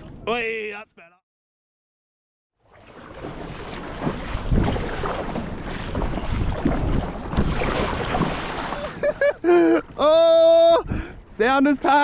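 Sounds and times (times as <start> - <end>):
water slapping against hull: 2.6 - 10.0
wind buffeting microphone: 3.2 - 12.0.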